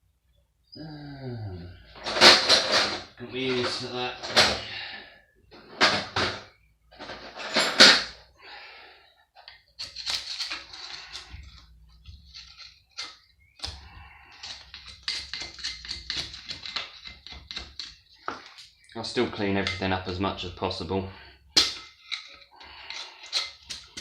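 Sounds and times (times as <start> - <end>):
metal tools clinking and scraping: 2.0 - 4.6, 5.6 - 8.2, 9.4 - 20.5, 21.5 - 24.0.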